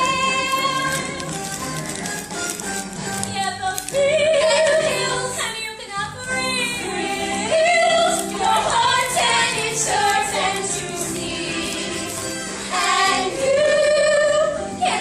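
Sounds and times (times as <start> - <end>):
woman singing: 0.0 - 1.2, 3.3 - 12.1
instrumental accompaniment: 0.0 - 15.0.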